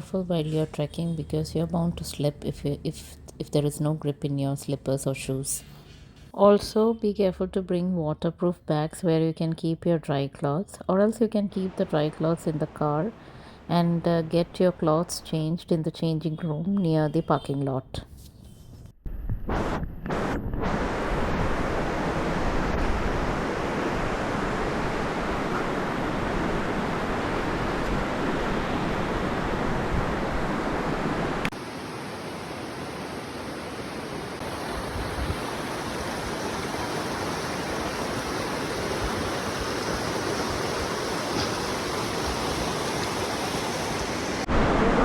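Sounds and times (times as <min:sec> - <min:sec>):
waterfall rushing: 0:21.6 - 0:45.0.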